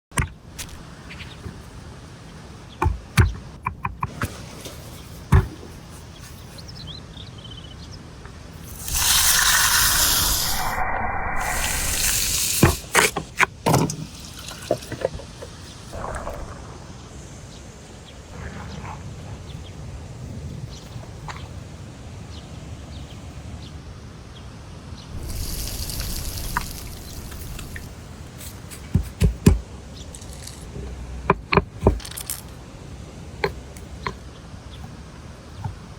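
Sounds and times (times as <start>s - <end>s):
water pouring: 8.8s - 10.8s, 14.0s - 15.1s, 15.8s - 17.3s, 25.2s - 27.9s.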